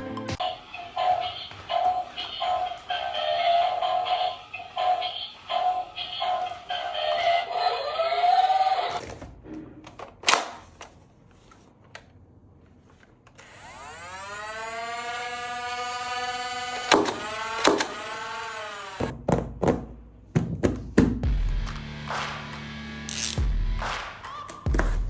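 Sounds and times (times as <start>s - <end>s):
synthetic toy tone sliding: 0.4s - 9.0s.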